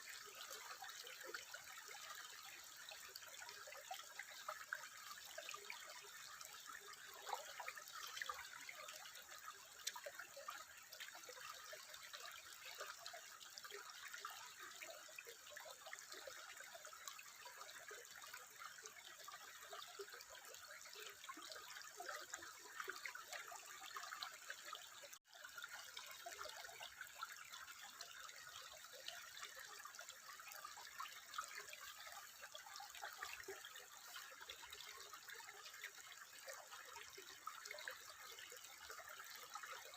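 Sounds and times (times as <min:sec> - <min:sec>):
water trickling and babbling: 0:00.0 - 0:39.9.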